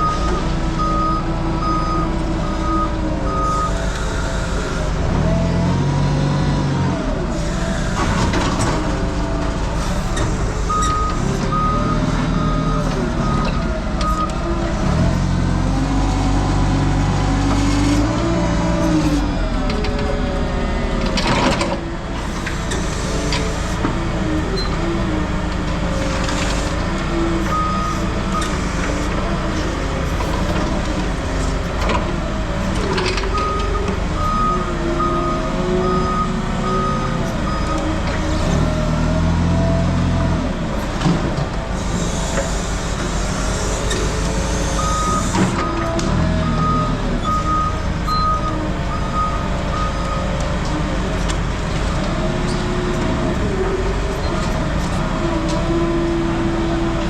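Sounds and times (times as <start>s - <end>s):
reversing alarm beeping: 0.0s - 5.9s, 9.7s - 14.4s, 27.4s - 29.6s, 33.2s - 37.9s, 43.2s - 50.3s
heavy vehicle engine revving: 0.0s - 57.0s.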